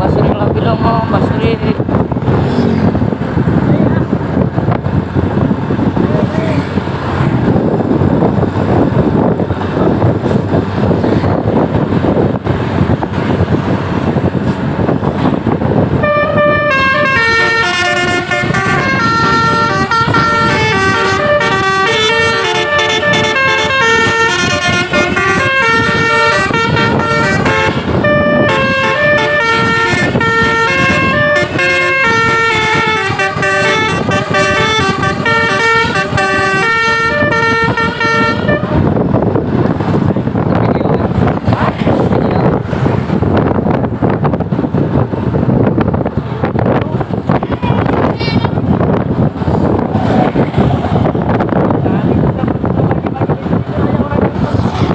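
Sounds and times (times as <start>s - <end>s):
loud rushing vehicle noise: 0.0s - 54.9s
multi-tone bus horn tune: 16.0s - 39.1s.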